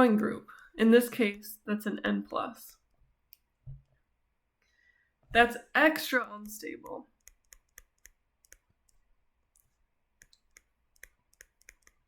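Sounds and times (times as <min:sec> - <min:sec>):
stylus tapping on tablet: 0:07.2 - 0:08.7, 0:10.2 - 0:12.0.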